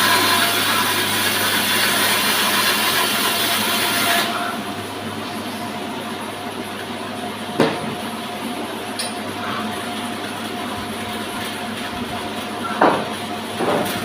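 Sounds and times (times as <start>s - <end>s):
saw machine droning: 0.0s - 7.4s.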